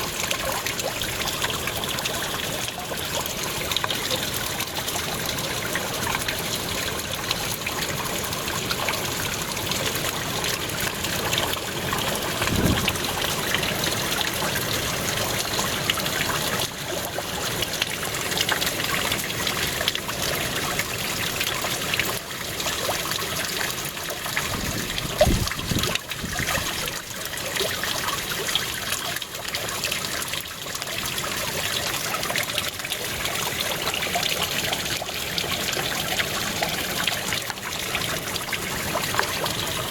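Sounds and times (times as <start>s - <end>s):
water trickling down small waterfall: 0.0s - 39.9s
low thumps: 12.4s - 13.4s.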